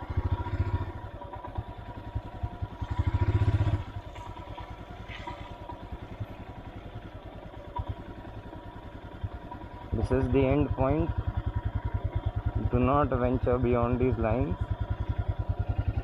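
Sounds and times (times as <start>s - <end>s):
motorcycle engine thudding: 0.4s - 9.9s.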